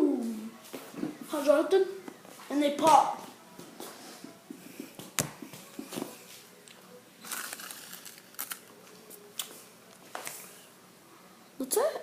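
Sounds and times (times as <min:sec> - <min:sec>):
plastic wrapping crinkling: 0:07.2 - 0:09.0.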